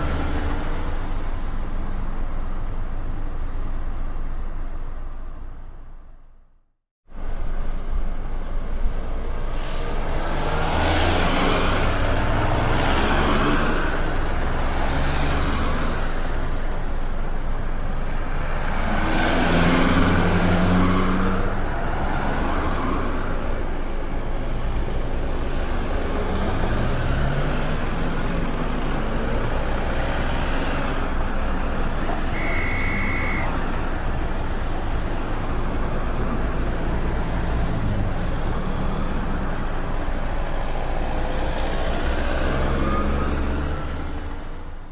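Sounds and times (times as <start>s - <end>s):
vehicles passing: 0.0s - 6.2s, 7.1s - 44.9s
traffic roar: 0.0s - 6.5s, 7.1s - 44.9s
short high beep: 32.2s - 33.8s.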